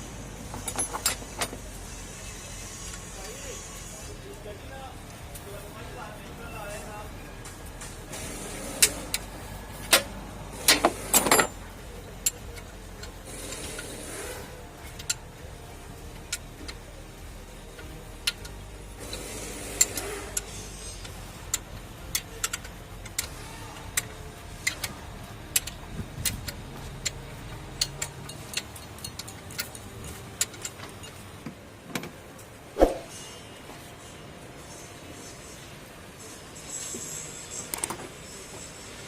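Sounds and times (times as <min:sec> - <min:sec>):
metallic clicks of hand tools: 0:08.6 - 0:15.2, 0:17.7 - 0:27.2, 0:27.8 - 0:31.2.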